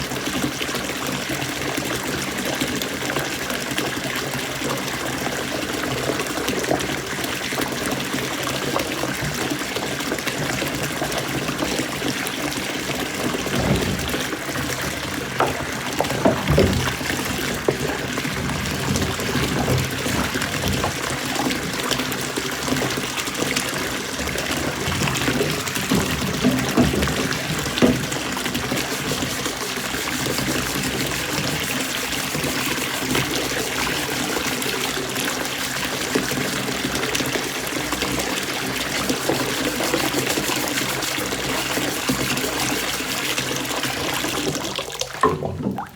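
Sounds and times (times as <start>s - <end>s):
water running from tap: 0.0s - 45.9s
knocks and clatters: 12.8s - 34.1s.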